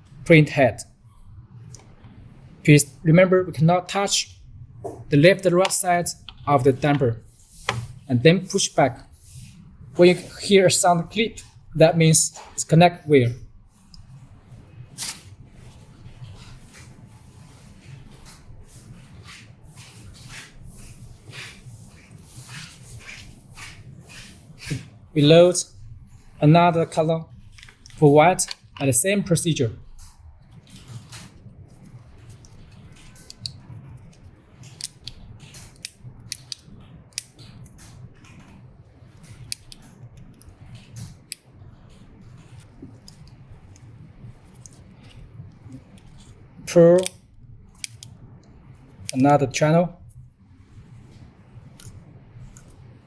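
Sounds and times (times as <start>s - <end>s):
low steady hum: 0.0s - 53.0s
plastic clicks and handling: 47.0s - 48.1s.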